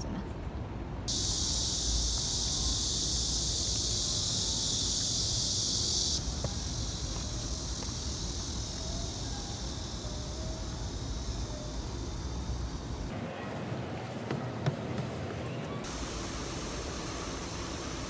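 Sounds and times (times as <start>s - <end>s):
city traffic hum: 0.0s - 18.0s
cicadas buzzing: 1.1s - 13.2s, 15.8s - 18.0s.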